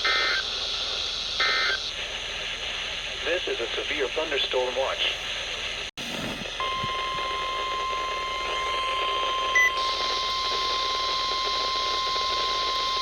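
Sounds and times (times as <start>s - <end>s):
radio static hiss: 0.0s - 7.5s
steady high alarm beep: 6.6s - 13.0s.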